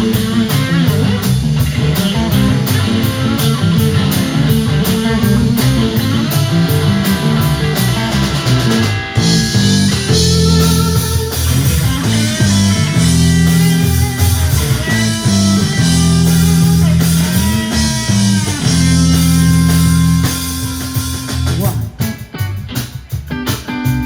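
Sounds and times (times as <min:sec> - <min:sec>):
live rock band playing: 0:00.0 - 0:24.0.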